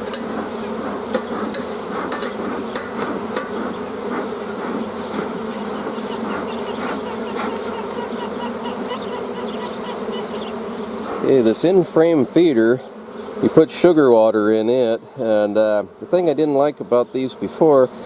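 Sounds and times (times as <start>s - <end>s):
wooden hive parts knocking: 0.0s - 7.8s
honeybees buzzing: 0.0s - 18.0s.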